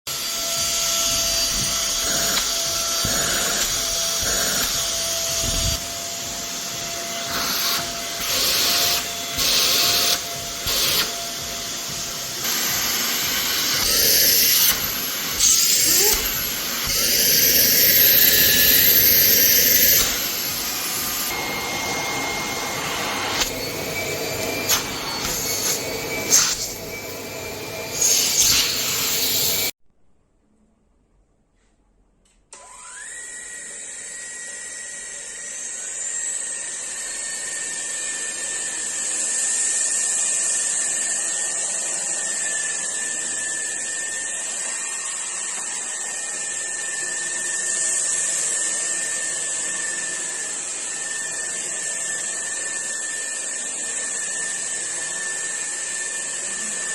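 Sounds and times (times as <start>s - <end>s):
vacuum cleaner running: 0.1s - 29.8s, 32.5s - 56.9s.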